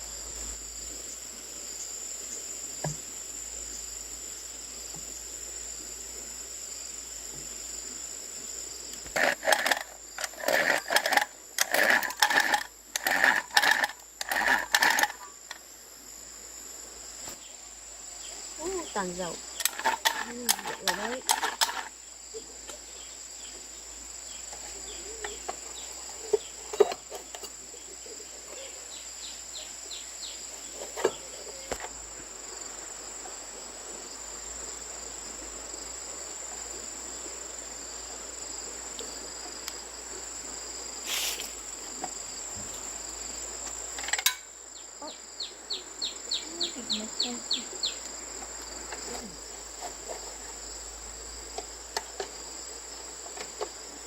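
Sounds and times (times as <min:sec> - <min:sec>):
insects chirring: 0:00.0 - 0:54.0.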